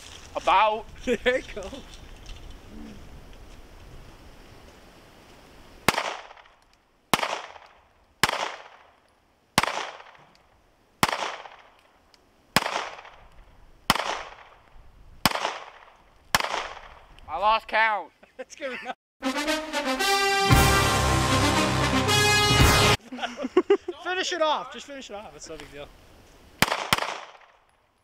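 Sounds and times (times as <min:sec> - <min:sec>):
pistol shots with echo: 0:07.1 - 0:08.9, 0:09.6 - 0:10.2, 0:11.0 - 0:11.7, 0:12.6 - 0:13.2, 0:13.9 - 0:14.6, 0:15.2 - 0:17.0, 0:26.6 - 0:27.5.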